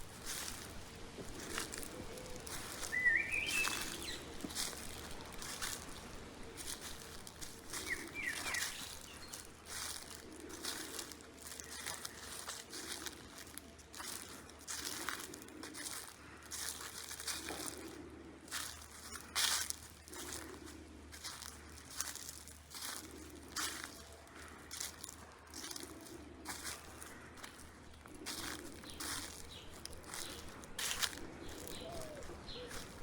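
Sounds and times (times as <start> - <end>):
footsteps crunching through dry leaves: 0.0 - 33.0
bird chirping: 2.8 - 4.4, 7.8 - 9.6, 28.6 - 33.0.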